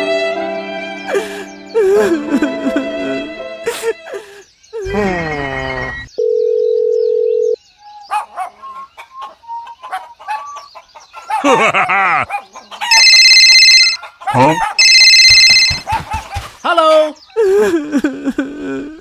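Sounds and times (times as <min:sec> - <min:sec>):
steady beep: 0:12.9 - 0:14.0, 0:14.8 - 0:15.8.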